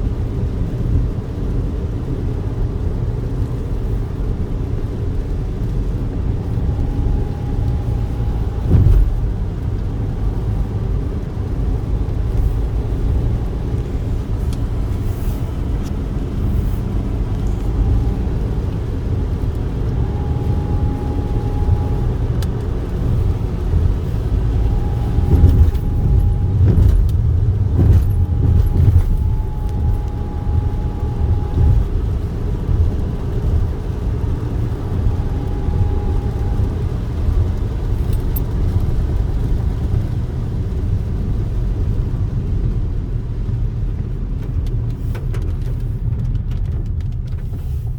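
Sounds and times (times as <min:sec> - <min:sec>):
car road rumble: 0:00.0 - 0:47.9
knocks from bumps: 0:25.1 - 0:29.8.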